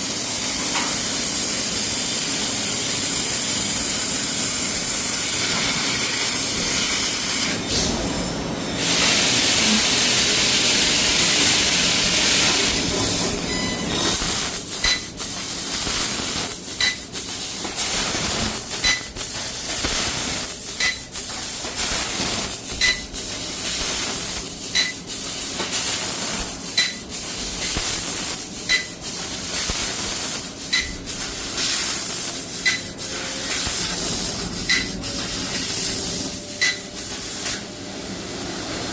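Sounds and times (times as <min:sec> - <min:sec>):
gas hissing through cutting head: 0:08.8 - 0:37.6
sharp click with high beep: 0:13.5 - 0:14.0, 0:14.8 - 0:15.2, 0:16.8 - 0:17.0, 0:18.8 - 0:19.2, 0:20.8 - 0:21.1, 0:22.7 - 0:23.1, 0:24.7 - 0:25.0, 0:26.8 - 0:27.0, 0:28.7 - 0:29.0, 0:30.7 - 0:31.0, 0:32.6 - 0:32.9, 0:34.6 - 0:35.0, 0:36.6 - 0:36.9.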